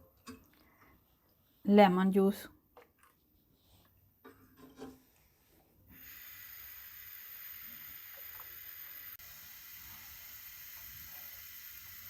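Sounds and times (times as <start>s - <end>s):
syrup hissing on a stove: 5.9s - 12.0s.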